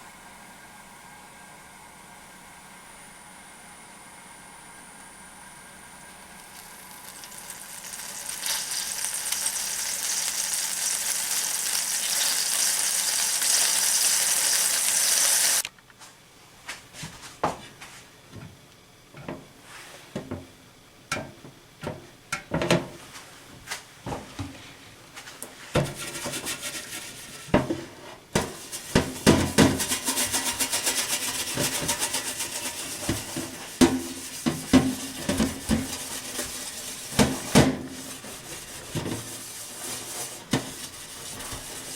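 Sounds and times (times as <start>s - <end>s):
water spraying from sink shower: 6.5s - 15.6s, 28.4s - 41.9s
metal scrubber scraping cookware: 25.8s - 27.6s, 28.4s - 41.9s
pots and utensils clattering: 25.8s - 27.8s, 28.4s - 41.9s.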